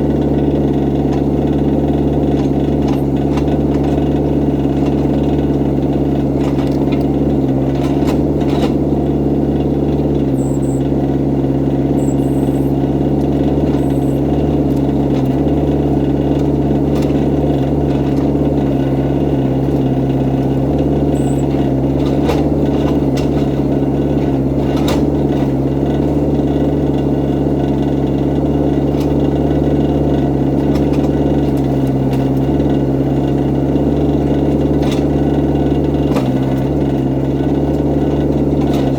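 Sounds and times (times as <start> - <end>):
excavator diesel engine running: 0.0 - 38.9
high machine squeaks: 10.3 - 10.9, 11.9 - 12.9, 13.5 - 14.4, 21.0 - 22.3.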